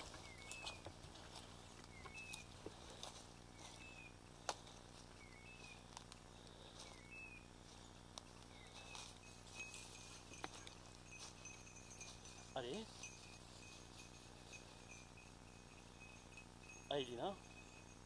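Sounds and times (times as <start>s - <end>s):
faint electronic chirp: 6.8s - 12.1s.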